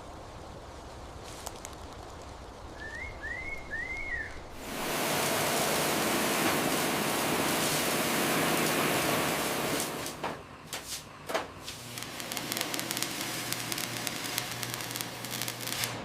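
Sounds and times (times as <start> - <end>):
loud steady hiss: 0.0 - 16.0
low rumbling ambience: 2.0 - 16.0.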